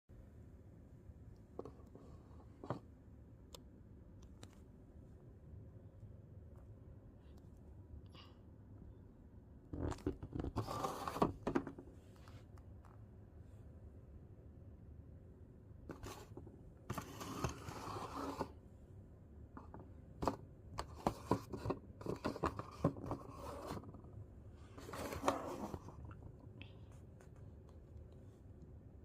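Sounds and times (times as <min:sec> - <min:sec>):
cardboard scraping and rustling: 0:09.9 - 0:11.7, 0:15.9 - 0:18.6, 0:20.2 - 0:24.1, 0:24.7 - 0:26.2.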